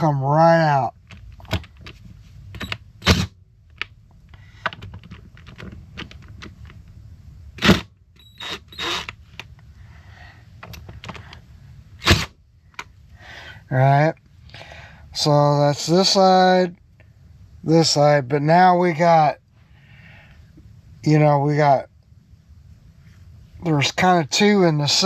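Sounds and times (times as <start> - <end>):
hammer striking impact driver: 2.6 - 3.3, 7.6 - 9.2, 12.0 - 12.3.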